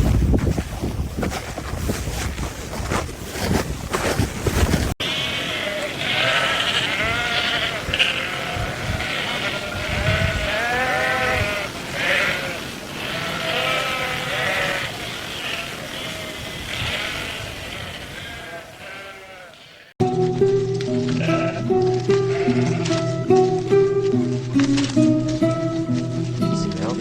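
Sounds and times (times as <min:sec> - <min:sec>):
wind gusting: 0:00.0 - 0:18.9
flock of sheep bleating: 0:05.0 - 0:19.9, 0:21.0 - 0:24.7.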